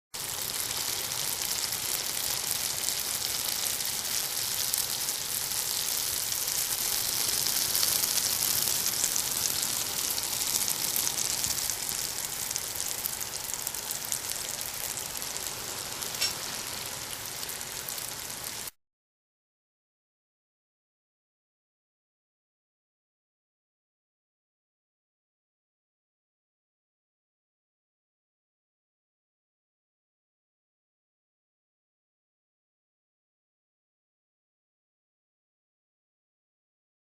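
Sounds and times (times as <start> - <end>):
oil frying in a pan: 0.2 - 18.8.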